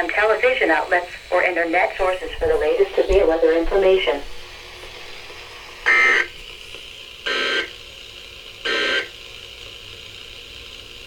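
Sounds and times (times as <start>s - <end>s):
receiver hiss: 0.0s - 9.2s
harsh buzzing data bursts: 5.4s - 9.2s.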